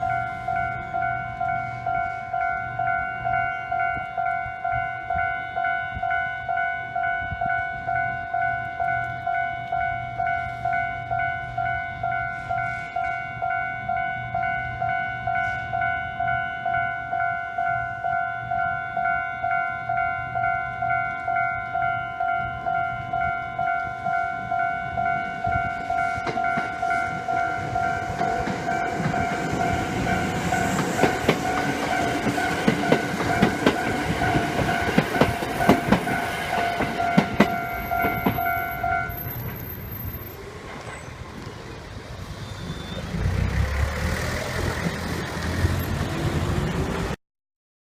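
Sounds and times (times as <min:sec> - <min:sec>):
level-crossing warning bell: 0:00.0 - 0:41.2
train wheels clacking over joints: 0:25.9 - 0:41.1.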